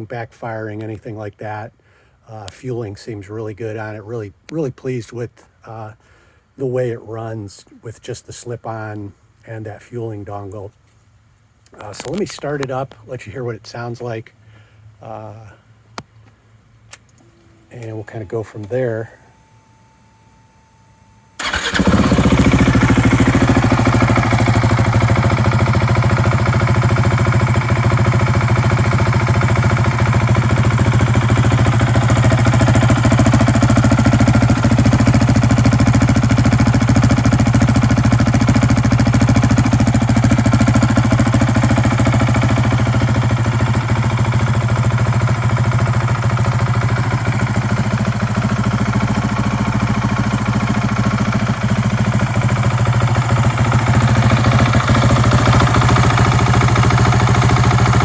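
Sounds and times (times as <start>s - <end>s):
motorcycle engine idling: 21.4s - 58.0s.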